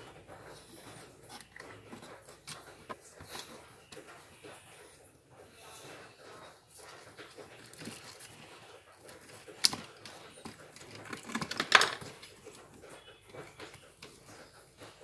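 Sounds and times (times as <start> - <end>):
wires and connectors clicking: 9.1 - 14.9.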